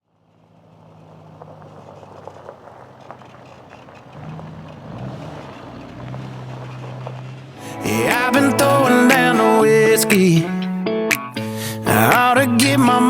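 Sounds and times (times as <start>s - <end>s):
diesel engine running: 0.0s - 10.7s
light engine ticks: 0.2s - 7.6s.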